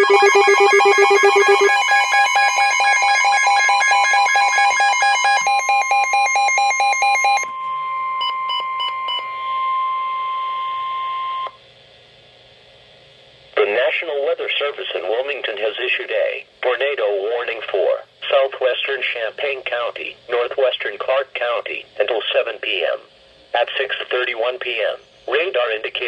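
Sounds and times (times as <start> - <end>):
rapid pulsing electronic beeps: 0.0 - 7.4
steady alarm tone: 0.0 - 11.5.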